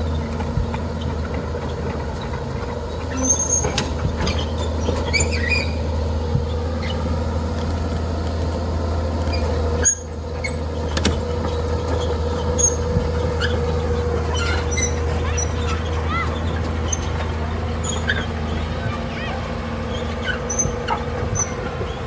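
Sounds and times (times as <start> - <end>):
heavy machine engine running: 0.0 - 22.0
high squeaks and squeals: 2.9 - 5.8, 11.5 - 22.0.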